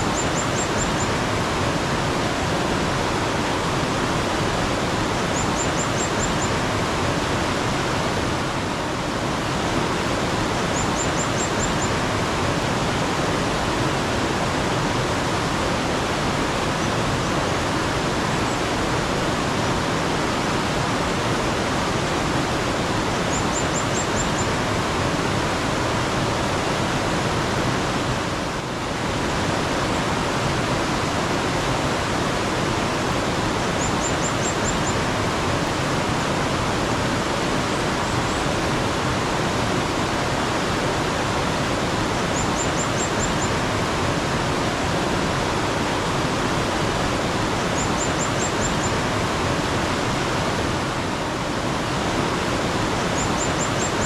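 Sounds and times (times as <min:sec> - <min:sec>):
mountain stream rushing: 0:00.0 - 0:54.0.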